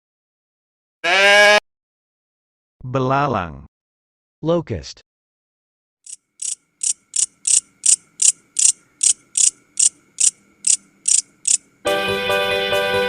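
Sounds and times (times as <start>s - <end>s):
grasshopper buzzing: 6.1s - 11.6s
music: 11.8s - 13.0s.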